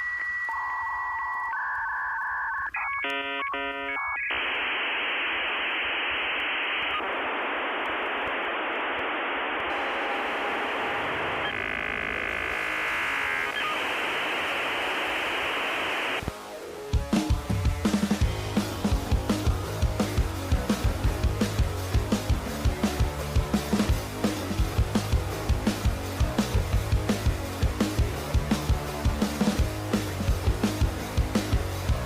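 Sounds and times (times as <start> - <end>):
dial-up modem tones: 0.0 - 16.3
modem hiss: 0.0 - 32.0
rock music: 16.3 - 32.0.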